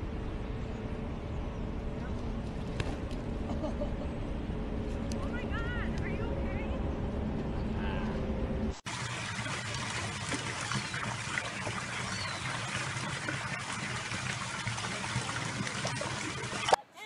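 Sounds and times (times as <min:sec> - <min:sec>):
water trickling and splashing: 0:08.8 - 0:16.8.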